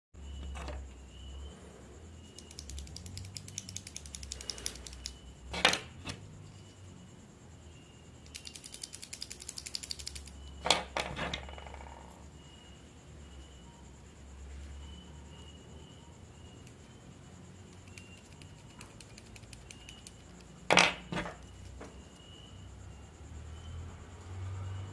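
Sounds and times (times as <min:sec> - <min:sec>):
rapid keyboard clicks: 0:02.3 - 0:05.2, 0:08.3 - 0:10.4, 0:17.8 - 0:20.2.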